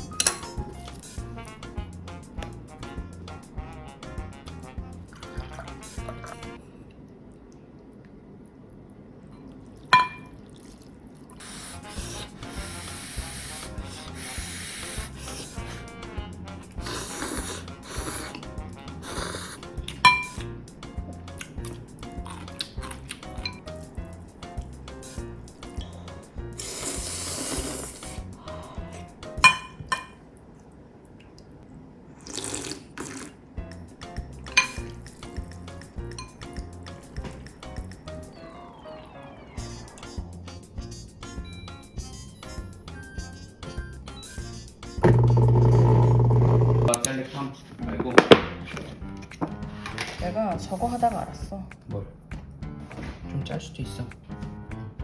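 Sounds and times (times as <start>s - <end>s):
background music with bass line: 0.0s - 6.6s, 11.8s - 27.2s, 33.6s - 38.3s, 39.6s - 46.9s, 54.3s - 55.0s
cookware clinking: 10.0s - 10.3s, 20.0s - 20.4s, 29.4s - 30.2s, 34.5s - 35.4s, 36.0s - 37.4s
cooking or water hiss: 11.4s - 15.7s, 26.4s - 28.3s.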